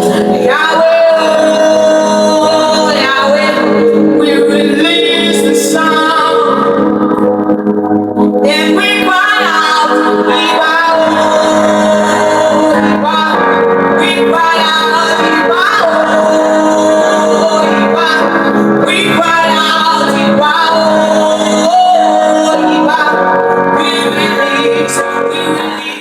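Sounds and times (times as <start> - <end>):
sustained chords: 0.0 - 26.0.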